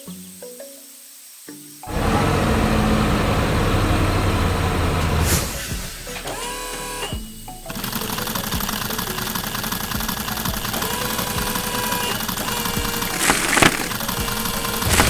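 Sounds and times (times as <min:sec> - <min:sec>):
music: 0:00.0 - 0:02.4, 0:05.3 - 0:15.0.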